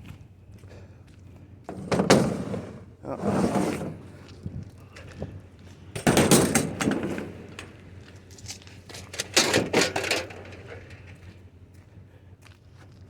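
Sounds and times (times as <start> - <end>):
scrap clattering and scraping: 1.7 - 5.4, 6.0 - 11.4.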